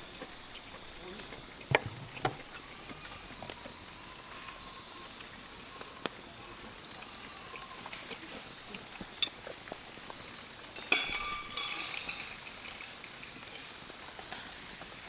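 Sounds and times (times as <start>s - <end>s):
utensils clinking on dishes: 10.2s - 14.4s
sharp ringing clink: 10.8s - 12.4s.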